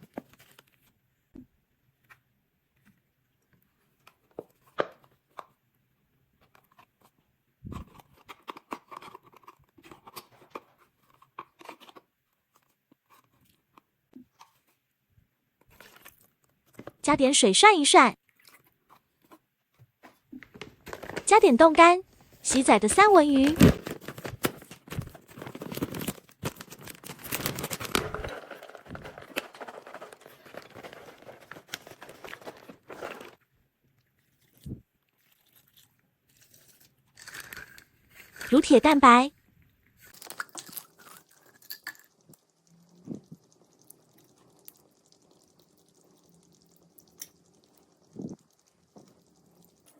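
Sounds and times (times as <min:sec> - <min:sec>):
treats crunching and crackling: 0:22.5 - 0:33.4, 0:40.0 - 0:49.9.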